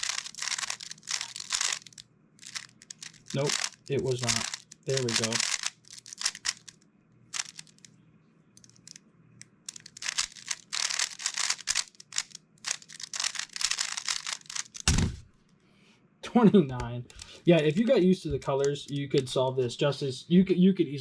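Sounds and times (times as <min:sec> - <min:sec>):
puzzle cube layers clicking: 0:00.0 - 0:07.9, 0:08.6 - 0:14.9
thump: 0:14.9 - 0:15.3.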